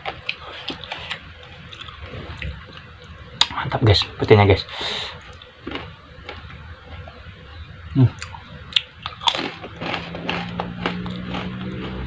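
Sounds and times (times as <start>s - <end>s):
eating crunches and mouth clicks: 0.0s - 3.6s, 5.2s - 6.6s, 8.1s - 12.0s
steady low hum: 0.0s - 12.0s.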